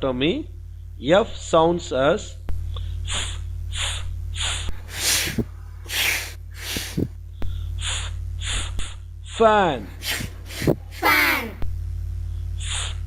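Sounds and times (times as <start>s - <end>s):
person making f sounds: 4.9s - 7.1s, 10.0s - 11.6s.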